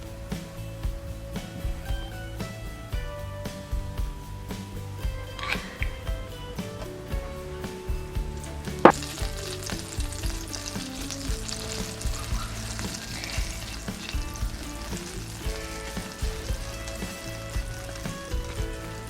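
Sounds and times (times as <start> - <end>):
vegetable slices sizzling in oil: 8.8 - 19.0.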